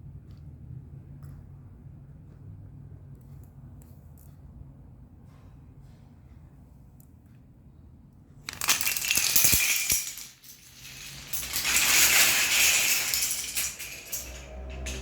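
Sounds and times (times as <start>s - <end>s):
wooden planks clattering: 8.5s - 15.0s.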